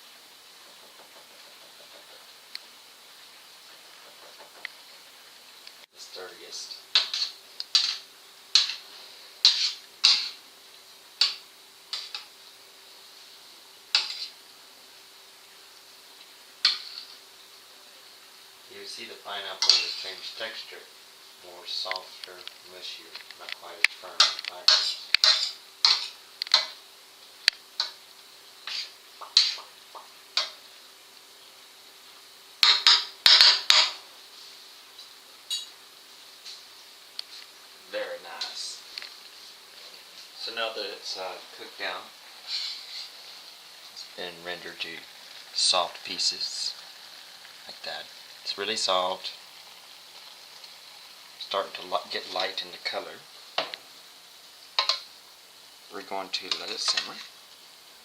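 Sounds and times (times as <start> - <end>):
faint steady hum: 0.0 - 58.0
utensils clinking on cookware: 6.9 - 8.8, 19.6 - 20.2, 24.2 - 26.8, 32.6 - 34.0, 35.5 - 35.8, 54.8 - 55.1, 56.3 - 57.3
utensil scraping a pan: 6.9 - 10.4, 11.2 - 12.3, 13.9 - 14.4, 16.6 - 17.2, 19.5 - 20.6, 24.1 - 26.8, 28.6 - 29.7, 42.3 - 43.5, 56.3 - 57.4.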